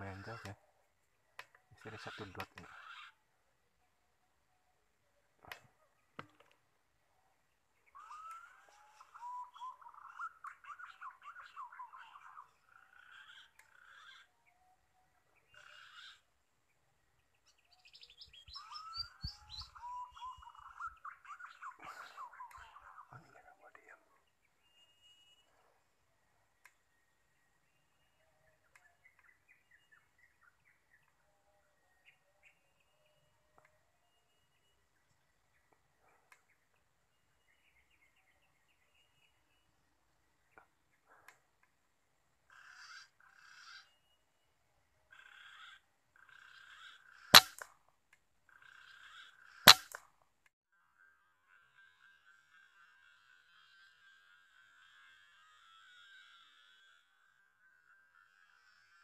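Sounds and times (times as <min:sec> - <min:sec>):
warbling bird calls: 0:00.0 - 0:00.7, 0:01.3 - 0:03.3, 0:07.3 - 0:16.4, 0:17.2 - 0:25.6, 0:42.4 - 0:44.2, 0:45.1 - 0:47.6, 0:48.5 - 0:50.0.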